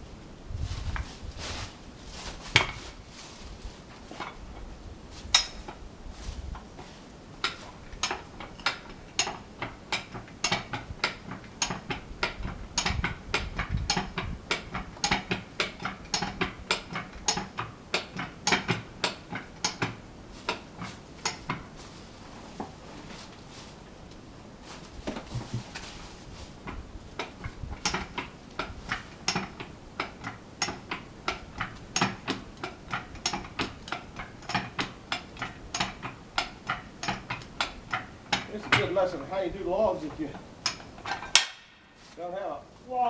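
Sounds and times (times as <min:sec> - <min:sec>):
track jack ratchet clanking: 0:07.4 - 0:21.8, 0:26.7 - 0:41.9.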